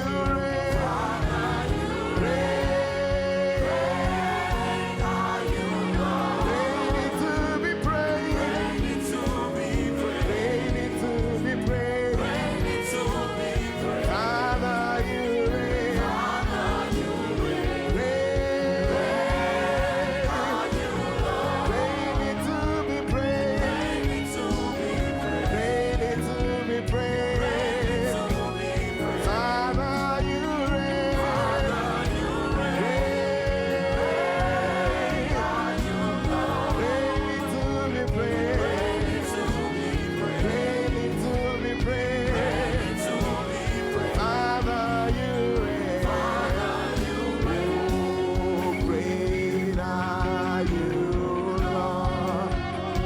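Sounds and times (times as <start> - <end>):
band with steady beat: 0.0 - 53.0
voices singing together: 0.0 - 53.0.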